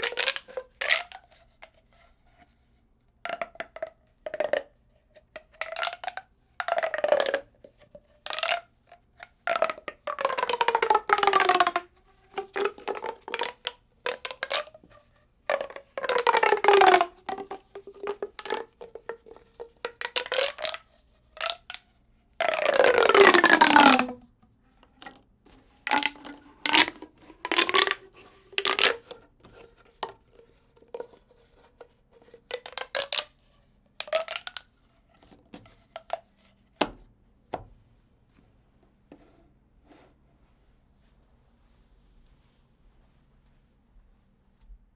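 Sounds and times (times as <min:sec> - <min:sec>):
expanding tube crackling: 0:09.6 - 0:13.6, 0:15.5 - 0:19.0, 0:19.6 - 0:20.8, 0:22.5 - 0:24.3, 0:25.8 - 0:29.2, 0:32.5 - 0:33.3, 0:34.0 - 0:34.6.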